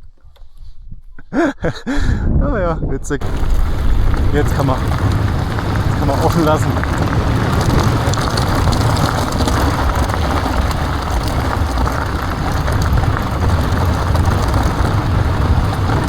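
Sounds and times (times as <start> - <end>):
wind over microphone: 0.0 - 16.0
bike tyres rolling over rough trail: 3.2 - 16.0.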